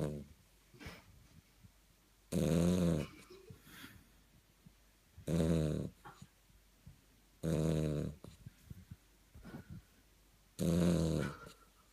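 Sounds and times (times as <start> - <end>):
dog snoring: 0.0 - 0.3, 2.3 - 3.2, 5.2 - 6.2, 7.4 - 8.4, 10.6 - 11.6.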